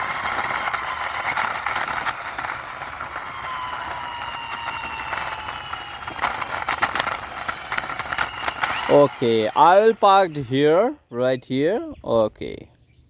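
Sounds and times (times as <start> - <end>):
toy rolling rattle: 0.0 - 10.9
faint whining tones: 0.0 - 11.0.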